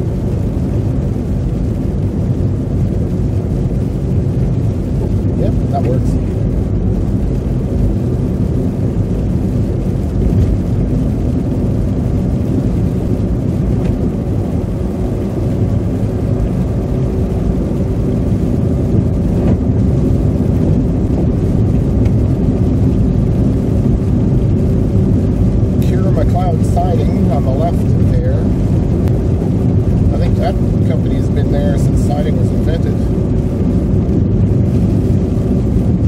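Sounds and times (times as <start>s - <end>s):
road and engine rumble in car: 0.0s - 36.0s.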